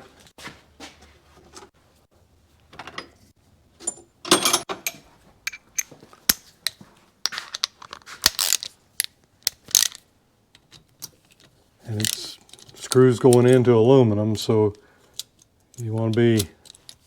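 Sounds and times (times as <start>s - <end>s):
hand tools clinking on metal: 3.8s - 6.0s
tool clatter: 3.8s - 6.4s.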